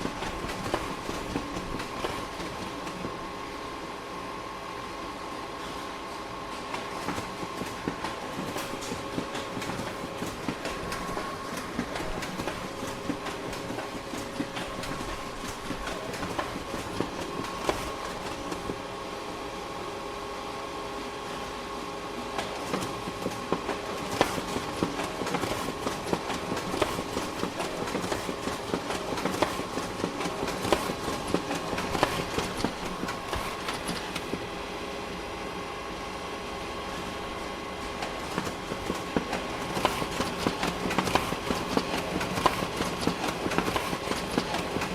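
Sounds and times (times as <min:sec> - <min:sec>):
photocopier hum: 0:00.0 - 0:44.9
paper mechanism clicking: 0:24.1 - 0:34.4, 0:38.3 - 0:44.9.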